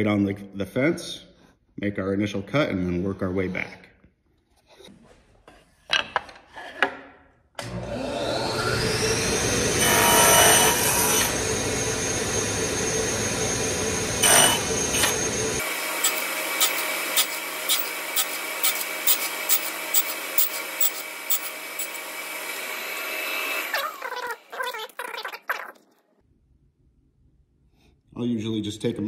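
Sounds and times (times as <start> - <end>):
table saw cutting board: 6.2 - 23.7.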